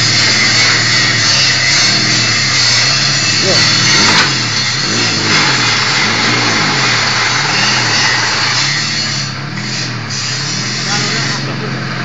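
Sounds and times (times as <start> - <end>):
engine hum rising and falling: 0.0 - 12.0.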